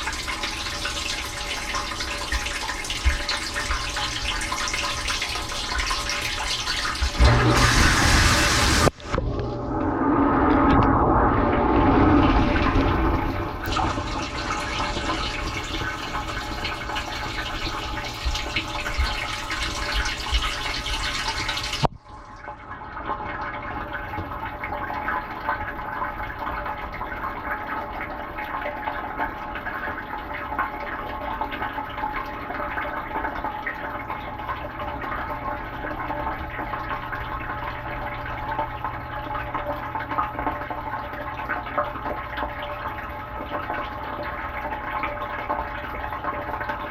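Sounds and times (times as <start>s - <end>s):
dishwasher low hum: 0.0s - 46.9s
dishwasher water spraying: 7.0s - 9.1s.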